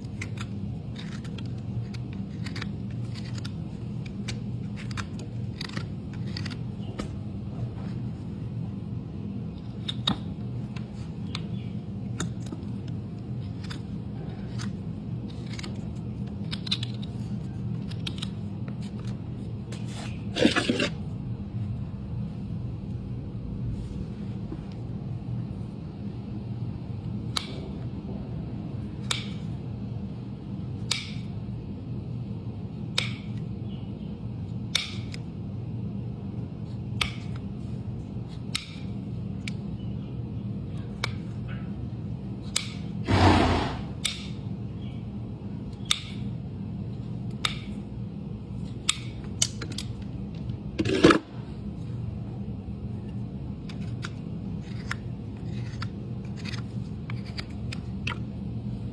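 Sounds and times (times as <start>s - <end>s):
steady low hum: 0.0s - 58.9s
scraping cut on hoof: 43.1s - 44.0s.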